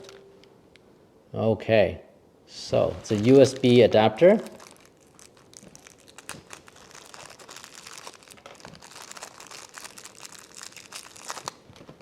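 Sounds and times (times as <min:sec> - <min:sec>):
plastic packaging crinkling: 0:02.8 - 0:12.0.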